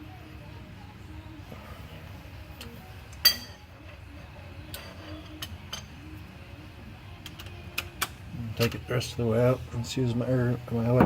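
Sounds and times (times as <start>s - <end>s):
metallic clink: 2.6s - 3.7s, 4.7s - 6.1s.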